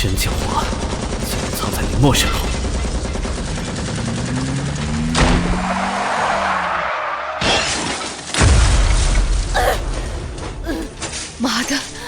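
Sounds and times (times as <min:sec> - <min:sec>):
car engine: 0:00.7 - 0:08.5
tyres skidding: 0:02.4 - 0:08.3
car crash: 0:02.6 - 0:09.5.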